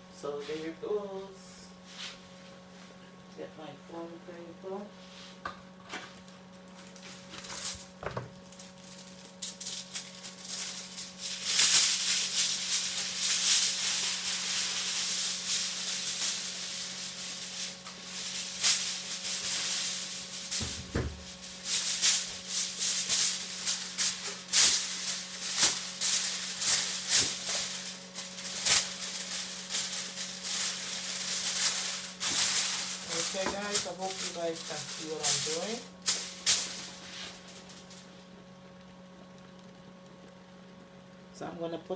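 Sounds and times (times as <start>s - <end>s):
aluminium foil crinkling: 5.7s - 38.8s.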